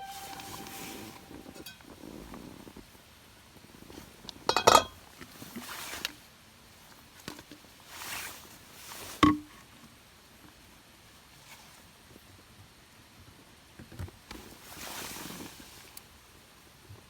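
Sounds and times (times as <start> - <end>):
cookware clinking and knocking: 4.5 - 5.0.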